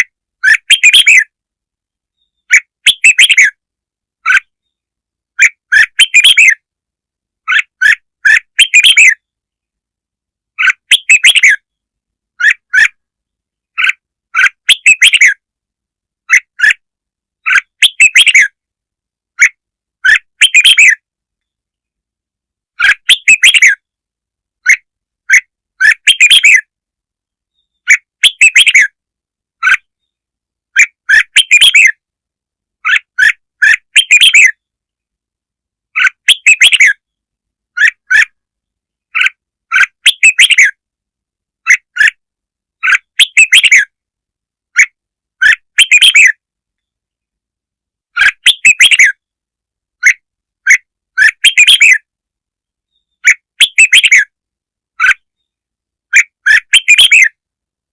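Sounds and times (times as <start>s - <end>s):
bird warbling song: 0.4s - 1.3s, 2.1s - 3.6s, 4.2s - 4.8s, 5.4s - 6.6s, 7.4s - 9.3s, 10.6s - 11.8s, 12.4s - 13.0s, 13.7s - 15.4s, 16.3s - 16.8s, 17.4s - 18.6s, 19.4s - 21.6s, 22.8s - 23.9s, 24.6s - 26.7s, 27.5s - 29.0s, 30.8s - 32.0s, 32.8s - 34.7s, 35.9s - 37.2s, 39.1s - 40.8s, 41.6s - 42.2s, 42.8s - 43.9s, 44.8s - 46.4s, 48.2s - 49.2s, 50.0s - 52.0s, 52.9s - 54.3s, 55.0s - 57.4s.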